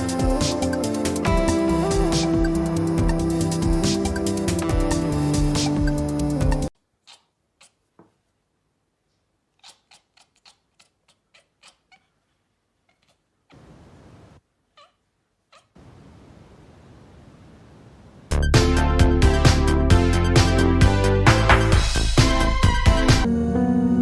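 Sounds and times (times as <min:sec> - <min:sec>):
faint background hiss: 0:06.8 - 0:18.3
cat meowing and chirping: 0:14.8 - 0:15.8.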